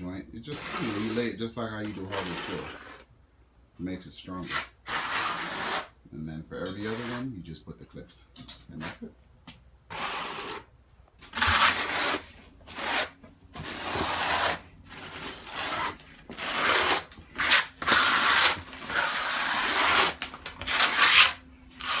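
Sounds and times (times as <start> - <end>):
tile scraping and rubbing strokes: 0.5 - 3.1, 4.4 - 5.9, 6.7 - 7.2, 9.9 - 22.0.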